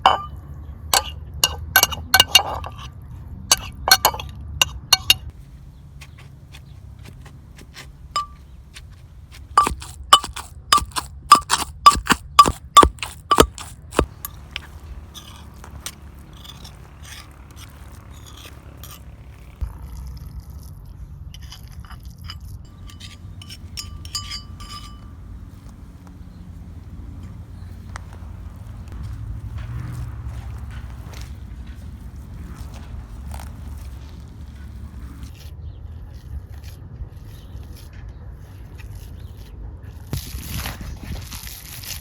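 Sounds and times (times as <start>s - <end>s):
utensil clinking against dish: 9.6s - 19.1s, 22.3s - 28.8s
utensil scraping dish: 9.6s - 19.6s, 21.4s - 28.9s.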